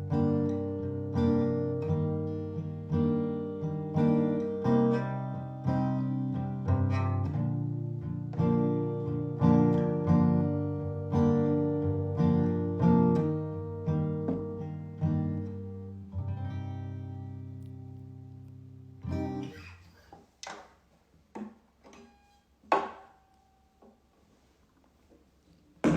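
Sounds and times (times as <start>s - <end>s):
acoustic guitar strummed chords: 0.0s - 19.8s
knocks and taps: 14.3s - 14.6s, 21.3s - 22.1s.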